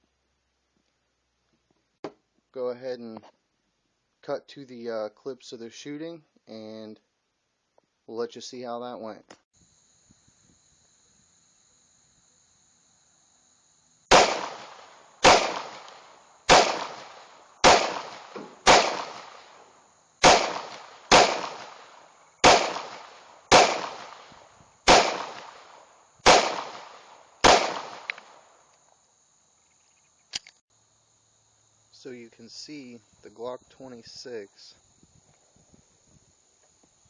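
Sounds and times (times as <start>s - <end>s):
high drone of insects: 8.1s - 37.0s
pistol shots echoing: 14.1s - 19.6s, 20.2s - 28.5s.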